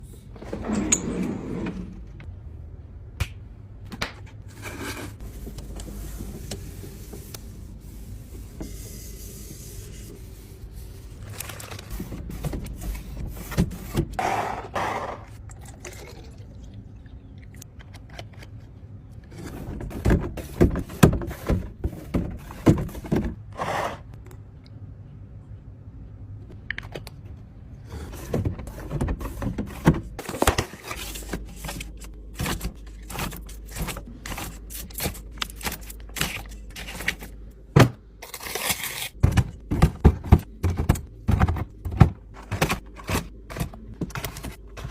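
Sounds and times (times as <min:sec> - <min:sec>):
food containers and lids handled: 0:28.1 - 0:44.9.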